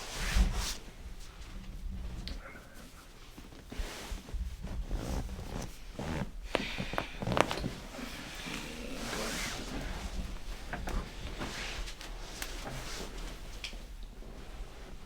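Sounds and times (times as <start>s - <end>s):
clothing rustling: 0.0s - 15.0s
spinal joints cracking: 5.4s - 7.9s.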